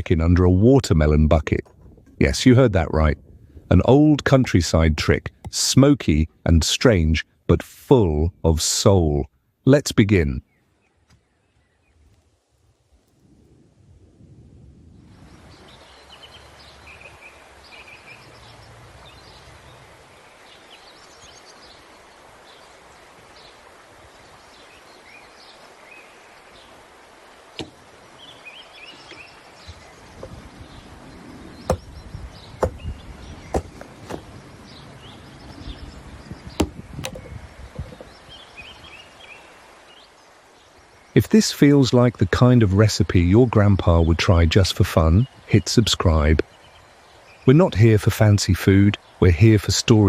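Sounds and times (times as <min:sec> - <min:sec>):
small birds chirping: 0:10.2 - 0:13.1, 0:15.0 - 0:50.0
sharp chopping knocks: 0:27.6 - 0:27.8, 0:31.7 - 0:31.9, 0:32.6 - 0:32.8, 0:33.5 - 0:34.3, 0:36.6 - 0:37.2.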